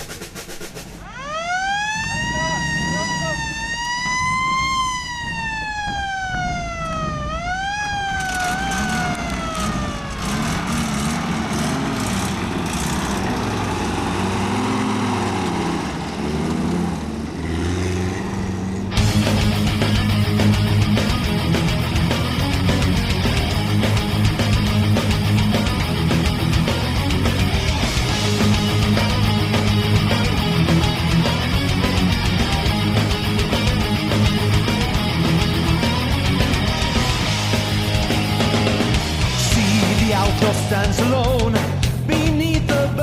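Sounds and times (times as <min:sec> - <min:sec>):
siren winding up and down: 0:01.0 - 0:12.2.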